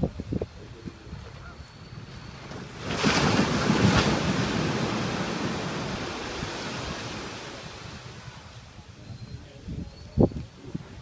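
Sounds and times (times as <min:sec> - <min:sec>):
ocean wave breaking: 0:02.1 - 0:08.7.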